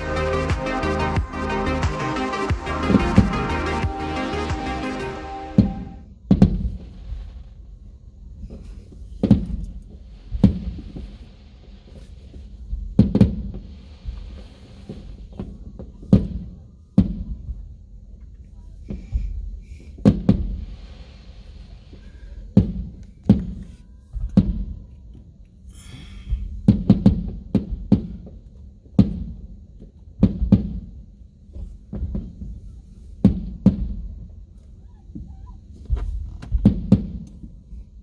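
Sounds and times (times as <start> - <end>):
low rumble: 0.0 - 15.3
fireworks booming: 0.0 - 17.8, 18.9 - 24.8, 26.3 - 29.6, 30.2 - 32.6, 33.2 - 34.3, 35.9 - 37.4.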